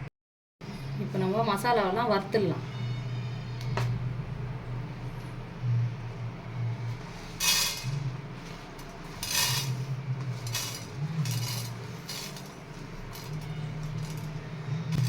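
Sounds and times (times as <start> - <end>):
low hum: 1.9 - 15.0
metal spoon scraping in pan: 6.9 - 15.0.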